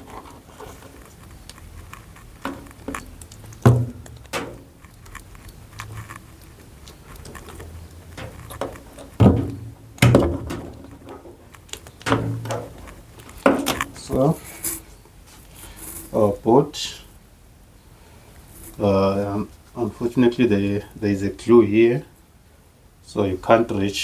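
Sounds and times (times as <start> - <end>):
light rubbing: 0.0 - 16.3
plastic knocks and clicks: 1.9 - 6.0, 7.2 - 14.0.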